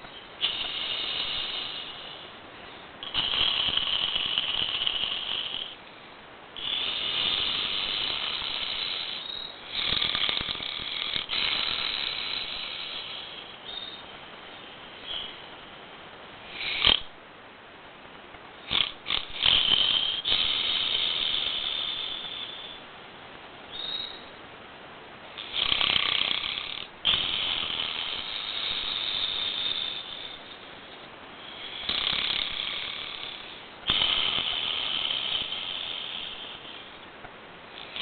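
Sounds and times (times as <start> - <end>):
man snoring: 3.0 - 5.8, 6.6 - 13.4, 18.7 - 22.2, 25.4 - 30.2, 31.5 - 36.6.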